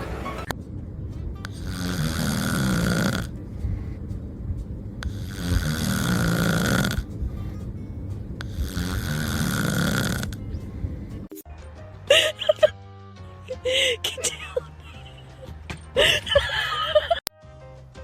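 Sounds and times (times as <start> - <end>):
loud rasping snoring: 1.5 - 3.4, 5.0 - 7.1, 8.4 - 10.5.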